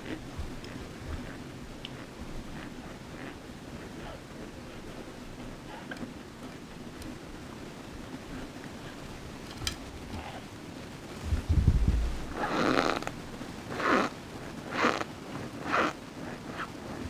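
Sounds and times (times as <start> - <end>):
low thud: 11.2 - 12.3.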